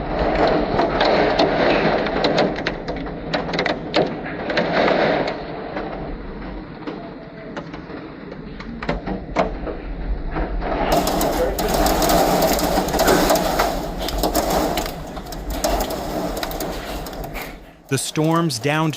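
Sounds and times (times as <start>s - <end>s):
rain: 10.9s - 17.7s
hailstones striking hard surfaces: 10.9s - 18.9s.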